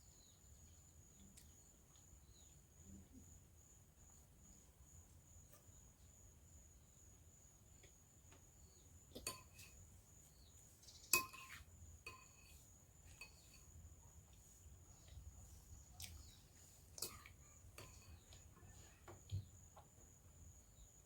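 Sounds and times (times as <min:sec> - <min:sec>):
utensil clinking against dish: 0:09.2 - 0:09.8, 0:11.1 - 0:13.7.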